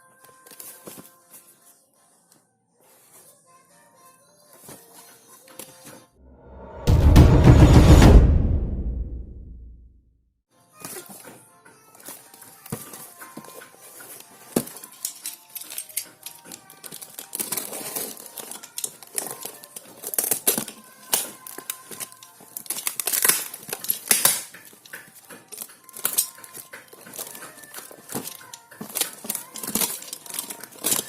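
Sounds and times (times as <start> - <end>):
plastic packaging crinkling: 10.9 - 31.0
plastic tearing: 12.0 - 31.0.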